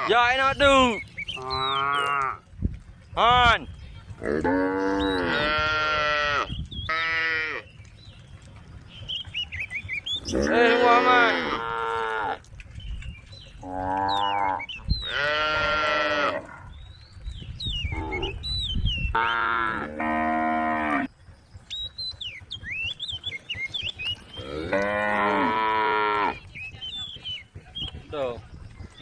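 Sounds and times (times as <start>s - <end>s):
birds chirping: 0.0s - 29.0s
cows mooing: 1.4s - 2.4s, 4.2s - 7.7s, 10.2s - 12.5s, 13.6s - 16.7s, 17.9s - 18.4s, 19.1s - 21.1s, 24.2s - 26.5s.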